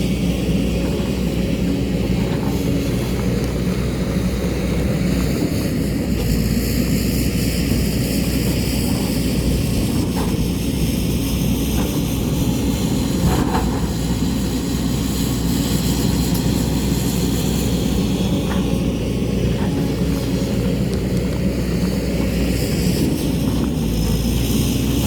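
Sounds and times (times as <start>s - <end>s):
diesel excavator engine running: 0.0s - 25.0s.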